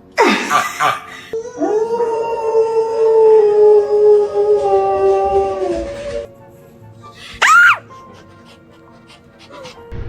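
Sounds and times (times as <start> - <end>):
dog howling: 1.3 - 6.3, 7.4 - 9.9.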